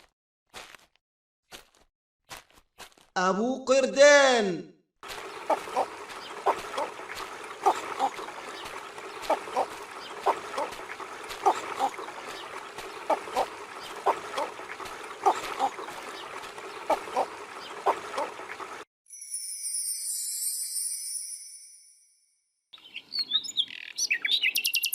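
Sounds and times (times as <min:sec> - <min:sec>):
background birds: 0:05.0 - 0:18.8, 0:22.8 - 0:24.9
egrets calling: 0:05.1 - 0:18.8.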